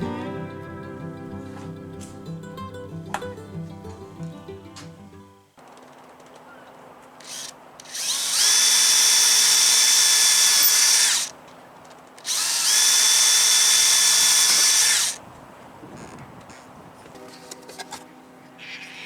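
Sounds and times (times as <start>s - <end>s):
electric power tool whine: 7.2s - 11.4s, 12.2s - 15.2s.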